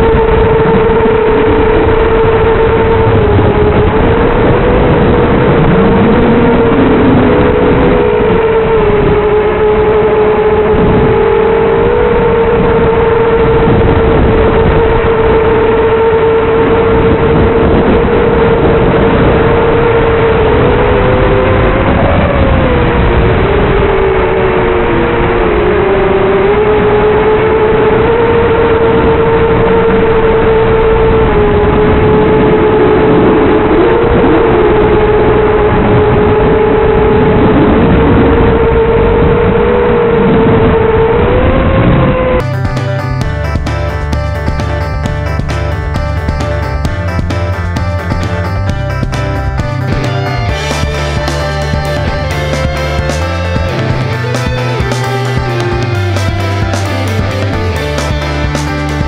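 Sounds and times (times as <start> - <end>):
drone motors whining: 0.0 - 33.1, 38.0 - 59.0.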